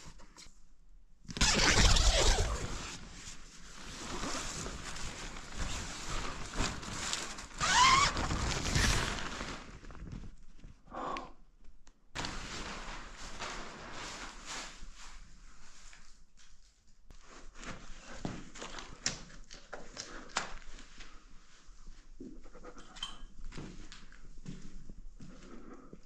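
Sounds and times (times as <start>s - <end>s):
rustling bedding and clothing: 1.4s - 10.8s, 12.2s - 19.6s.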